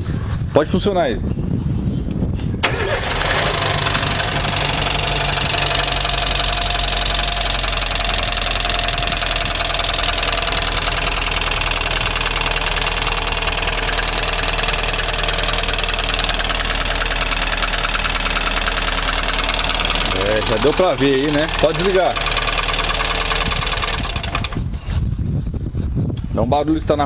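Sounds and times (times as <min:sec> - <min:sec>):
car engine idling: 0:02.6 - 0:24.8
rapid engine tapping: 0:02.6 - 0:25.2.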